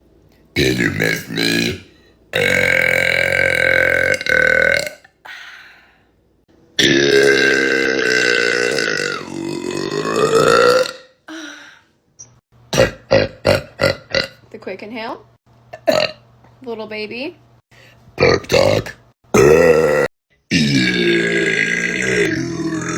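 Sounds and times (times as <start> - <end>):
woman belching: 2.4 - 5.1, 6.8 - 11.2, 12.8 - 14.4, 15.8 - 16.2, 19.3 - 22.9.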